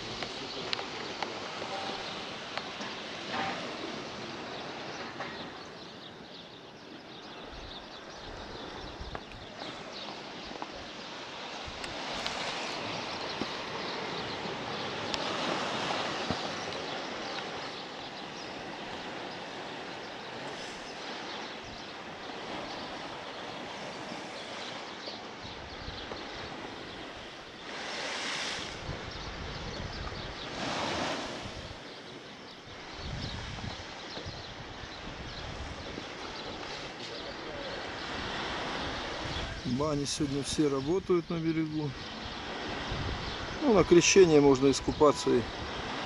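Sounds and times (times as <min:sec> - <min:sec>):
surf breaking on beach: 0:00.0 - 0:05.7, 0:08.3 - 0:46.0
wind on microphone: 0:07.3 - 0:40.3, 0:41.9 - 0:44.0, 0:44.8 - 0:46.0.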